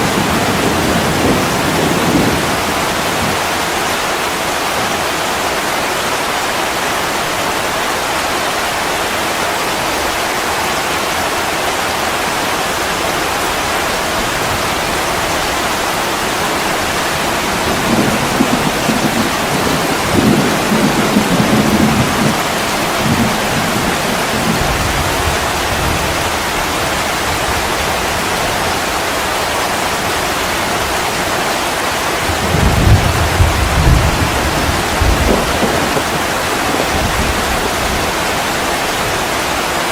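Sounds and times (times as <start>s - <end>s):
rolling thunder: 0.0s - 3.5s, 16.8s - 26.4s, 32.3s - 38.3s
steady rain: 0.0s - 39.9s.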